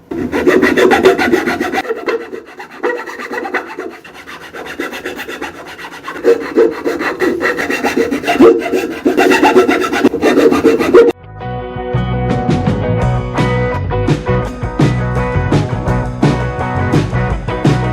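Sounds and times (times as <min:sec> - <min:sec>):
sanding wood by hand: 0:00.0 - 0:11.2.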